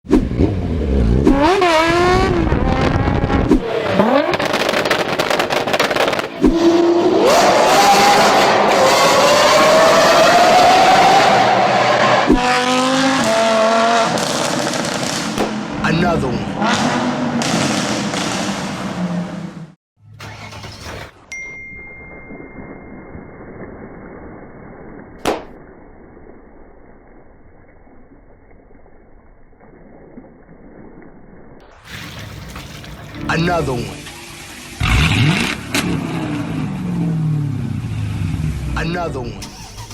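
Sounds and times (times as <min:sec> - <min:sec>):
vehicle engine rumbling: 0:00.2 - 0:07.1, 0:30.4 - 0:39.9
performance engine revving: 0:00.2 - 0:21.1, 0:33.2 - 0:39.9
exhaust crackling: 0:00.3 - 0:06.7, 0:31.8 - 0:39.9
exhaust bang: 0:31.8 - 0:38.8.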